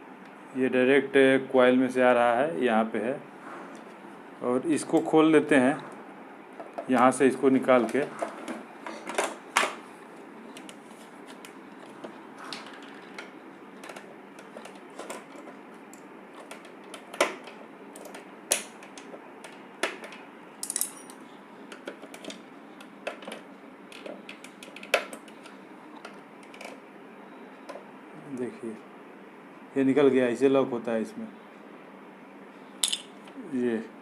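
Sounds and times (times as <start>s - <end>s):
plastic and metal parts clicking: 23.1s - 26.8s.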